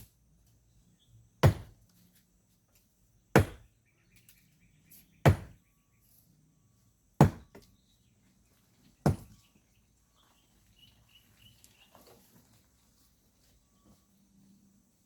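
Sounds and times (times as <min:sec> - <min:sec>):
digging tool striking ground: 0:01.4 - 0:01.8, 0:03.4 - 0:03.7, 0:05.2 - 0:05.6, 0:07.2 - 0:07.6, 0:09.1 - 0:09.3.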